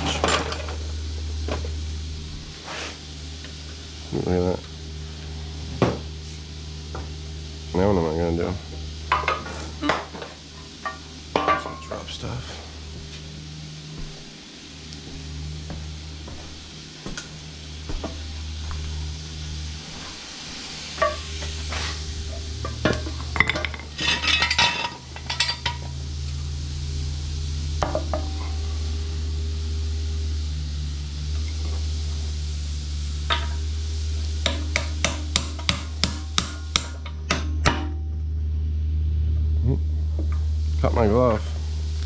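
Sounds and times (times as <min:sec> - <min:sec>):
hand tools and metal parts clinking: 0:00.0 - 0:00.8, 0:21.0 - 0:26.0
steady low hum: 0:00.0 - 0:42.0.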